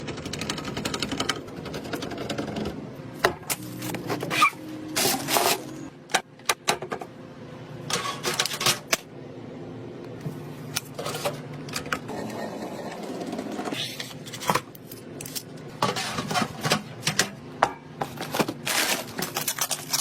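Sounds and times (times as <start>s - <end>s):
computer parts clicking and rattling: 0.0s - 2.8s.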